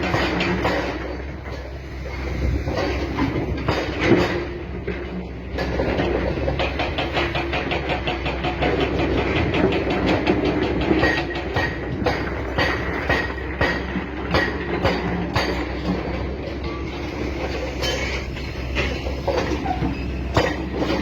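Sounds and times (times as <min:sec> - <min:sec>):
excavator tracks clanking: 0:00.0 - 0:21.0
track running gear squealing: 0:16.8 - 0:21.0.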